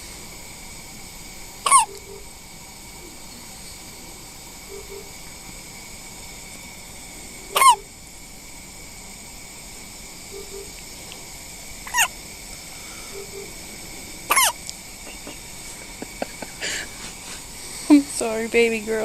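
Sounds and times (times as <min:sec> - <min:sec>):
newborn hiccuping: 0:01.7 - 0:02.0, 0:07.6 - 0:07.8, 0:14.3 - 0:14.6.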